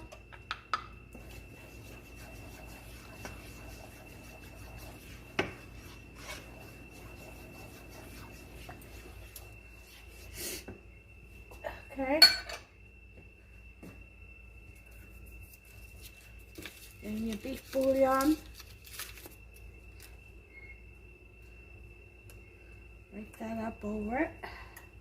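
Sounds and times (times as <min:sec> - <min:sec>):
low hum: 0:00.0 - 0:16.4
faint high whine: 0:00.0 - 0:25.0
spoon scraping in pan: 0:01.2 - 0:10.3.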